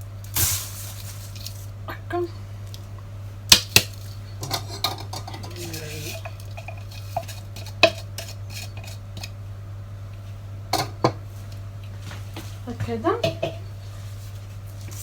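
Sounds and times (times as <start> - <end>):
utensil scraping a baking tray: 4.4 - 9.4.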